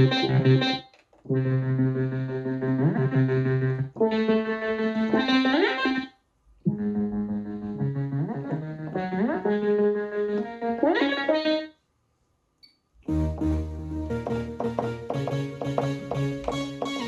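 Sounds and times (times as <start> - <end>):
synthesizer chords and runs: 0.0 - 6.0, 13.1 - 17.0.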